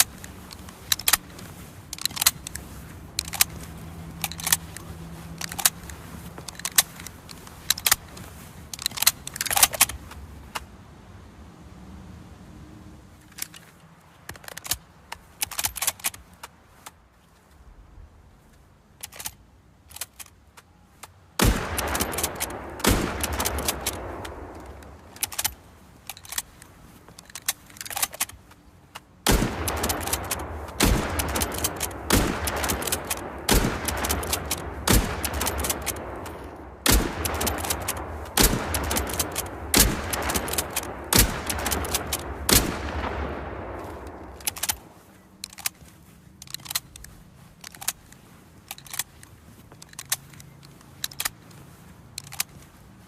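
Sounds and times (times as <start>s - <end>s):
rifle bolt clicks: 0.0s - 10.7s, 14.3s - 17.0s, 19.0s - 52.7s
rifle shots echoing: 21.4s - 25.6s, 29.2s - 45.1s.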